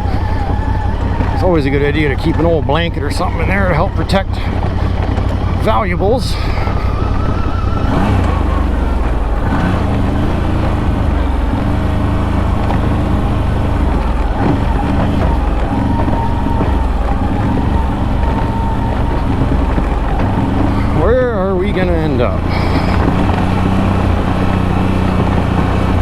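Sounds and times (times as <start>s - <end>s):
atv engine running: 0.0s - 26.0s.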